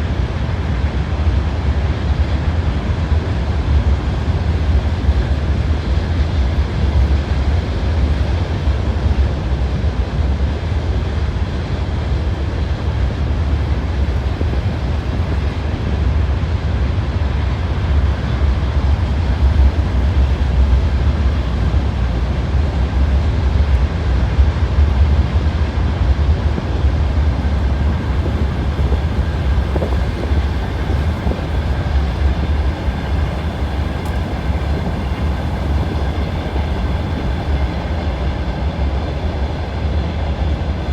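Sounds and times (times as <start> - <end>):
train wheels rumbling on rails: 0.0 - 40.9.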